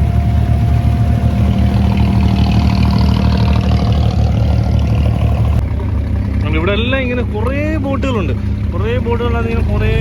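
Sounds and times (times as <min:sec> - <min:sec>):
boat engine throbbing: 0:00.0 - 0:10.0
steady engine whine: 0:00.0 - 0:10.0.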